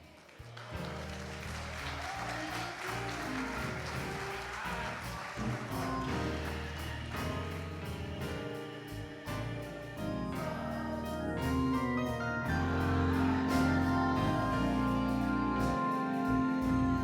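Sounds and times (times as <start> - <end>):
church instrumental music: 0.0 - 17.0
hand clapping: 0.1 - 8.0.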